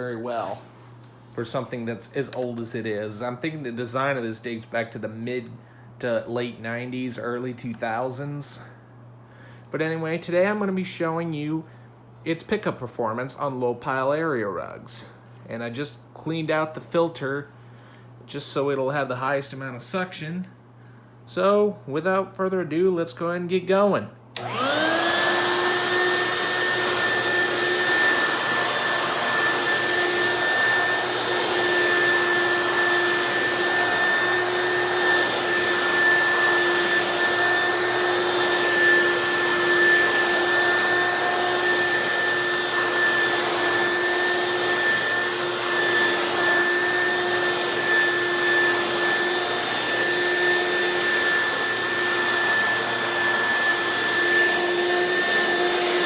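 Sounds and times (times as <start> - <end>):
stick vacuum running on rug: 24.4 - 56.0.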